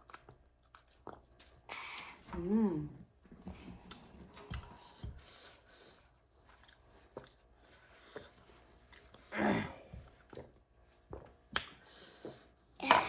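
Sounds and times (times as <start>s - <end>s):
person chewing noodles: 0.0s - 2.2s, 5.9s - 9.3s.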